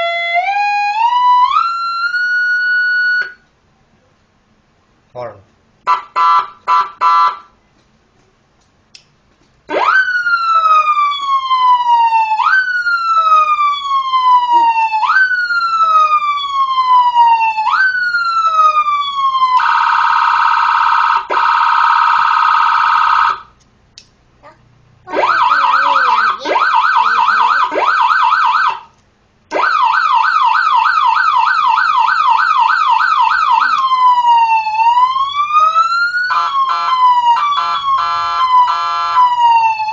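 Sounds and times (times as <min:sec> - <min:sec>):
electronic siren cycling tones: 0:00.0 - 0:03.4, 0:09.7 - 0:23.5, 0:25.1 - 0:28.9, 0:29.5 - 0:39.9.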